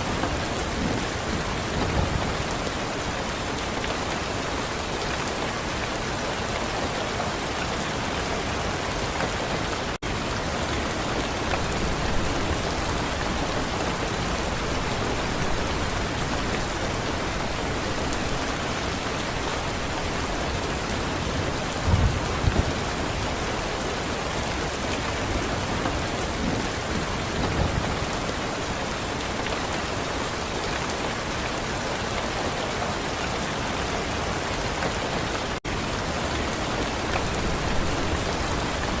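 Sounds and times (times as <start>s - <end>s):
heavy rain falling: 0.0s - 39.0s
low thunder rumbles: 21.2s - 23.3s.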